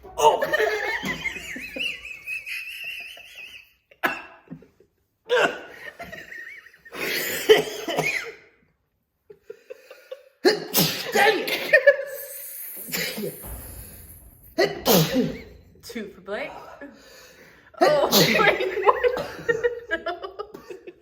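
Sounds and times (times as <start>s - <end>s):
laughter: 0.2s - 8.0s, 9.2s - 10.5s, 18.2s - 21.0s
person coughing: 7.2s - 8.4s, 10.4s - 12.0s, 14.6s - 15.7s, 17.8s - 19.7s.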